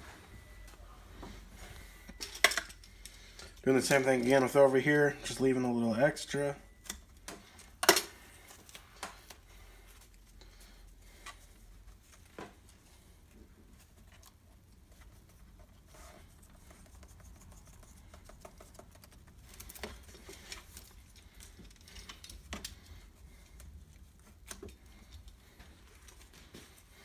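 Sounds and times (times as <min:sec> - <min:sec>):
tape rustling: 0:06.8 - 0:27.0.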